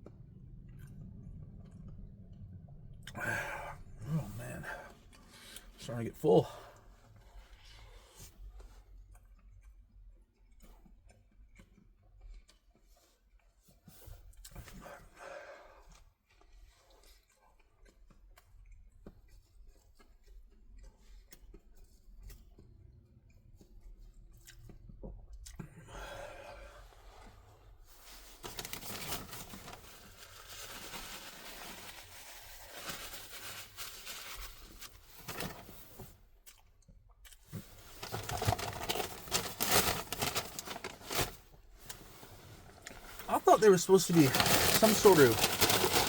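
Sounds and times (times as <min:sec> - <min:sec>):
chewing with mouth clicks: 0:08.4 - 0:14.8, 0:15.8 - 0:25.8, 0:36.4 - 0:37.7
paper bag rustling: 0:28.2 - 0:36.1, 0:37.6 - 0:46.0.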